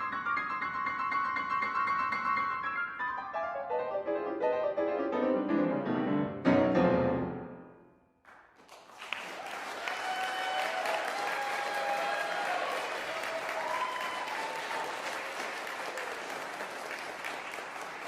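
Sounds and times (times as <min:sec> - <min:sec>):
solo piano toccata: 0:00.0 - 0:07.9
audience applause: 0:08.3 - 0:18.0.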